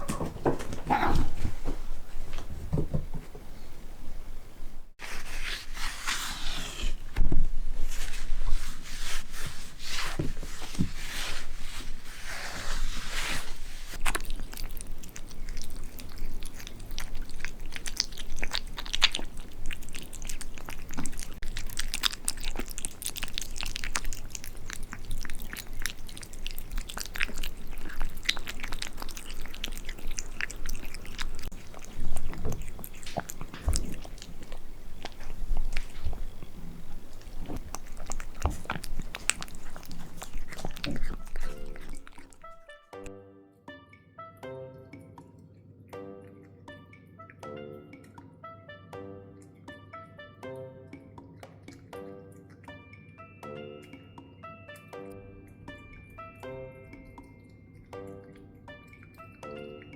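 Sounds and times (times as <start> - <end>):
cat chewing: 5.0 - 43.1.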